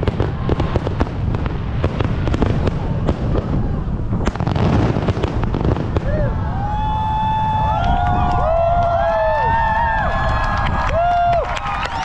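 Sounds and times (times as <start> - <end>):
fireworks banging and crackling: 0.0 - 9.0
low booming: 0.0 - 9.0.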